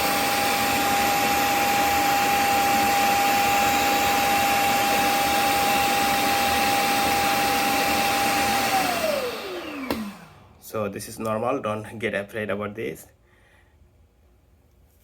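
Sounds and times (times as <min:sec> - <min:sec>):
vacuum suction motor whining: 0:00.0 - 0:11.4.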